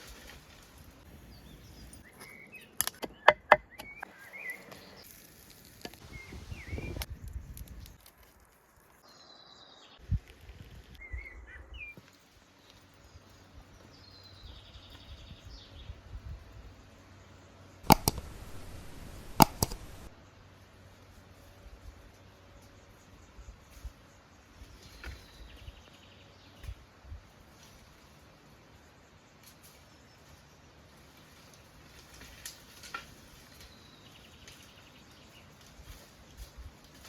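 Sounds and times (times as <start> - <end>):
bird chirps: 1.3 - 5.0
sharp clicks or knocks: 17.9 - 20.1.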